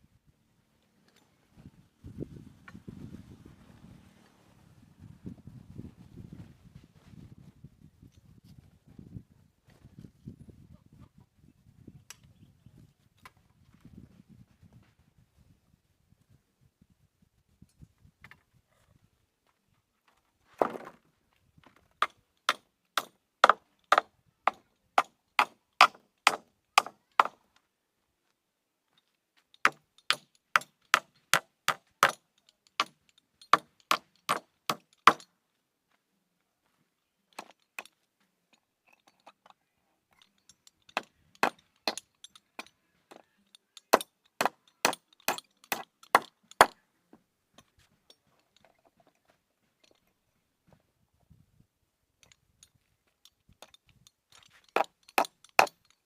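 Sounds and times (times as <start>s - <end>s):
hammer striking wood: 22.5s - 27.4s, 29.6s - 32.2s, 32.8s - 35.3s, 41.0s - 42.0s, 43.9s - 46.8s.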